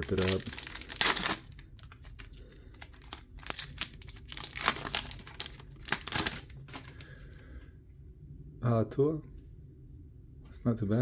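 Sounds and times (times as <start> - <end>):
packaging tearing and crinkling: 0.0 - 7.1.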